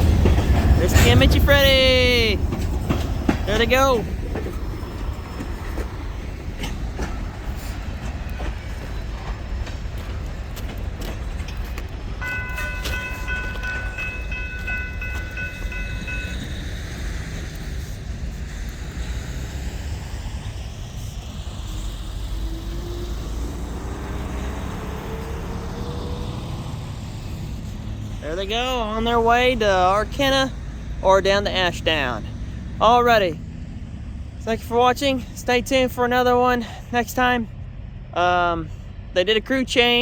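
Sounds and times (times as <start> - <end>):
wheel clicks over rail joints: 0.0 - 16.6
freight train rumbling: 0.0 - 40.0.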